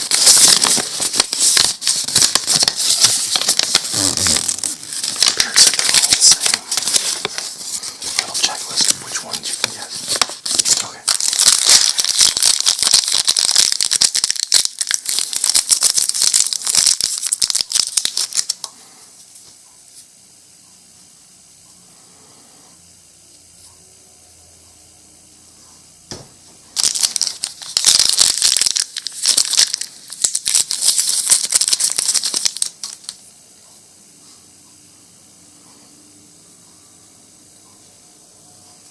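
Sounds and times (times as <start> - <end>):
plastic packaging crinkling: 0.0 - 18.7, 26.7 - 33.2.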